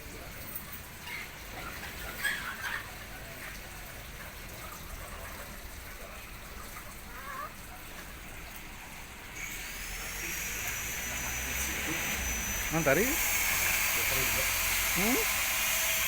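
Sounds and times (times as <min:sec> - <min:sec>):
faint chicken calls: 0:06.6 - 0:07.9
rain hissing: 0:08.2 - 0:16.0.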